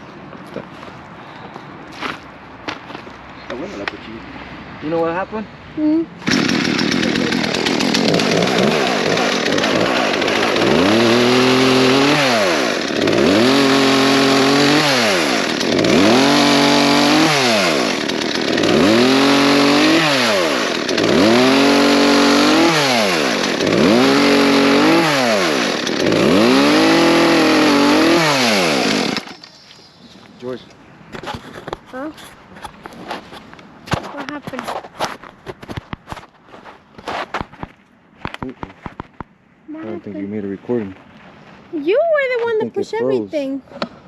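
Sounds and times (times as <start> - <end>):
chainsaw revving: 6.2 - 29.5.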